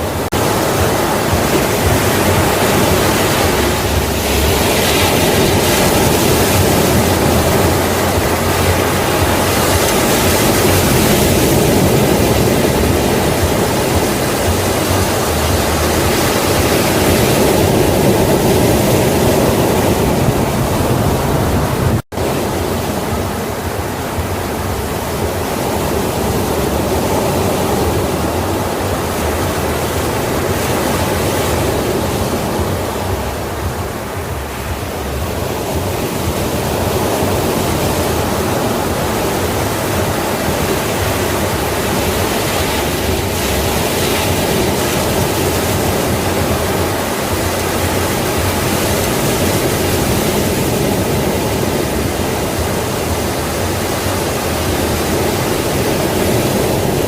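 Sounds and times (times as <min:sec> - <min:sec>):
sea waves breaking: 0:00.0 - 0:57.0.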